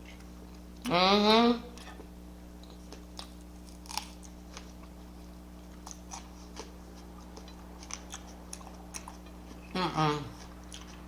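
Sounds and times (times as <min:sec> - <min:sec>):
person chewing food: 0:01.7 - 0:11.0.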